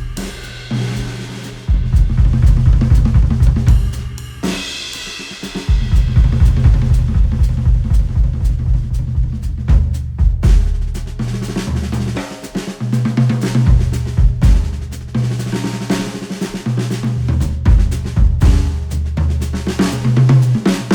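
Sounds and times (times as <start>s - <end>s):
heavy bass line: 0.0s - 4.2s, 5.8s - 11.1s
drum kit beat: 0.0s - 20.9s.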